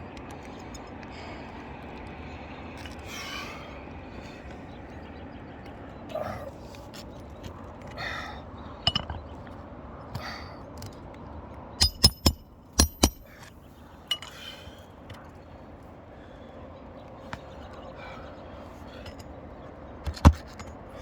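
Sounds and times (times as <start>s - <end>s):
hammer striking metal: 11.8s - 13.3s.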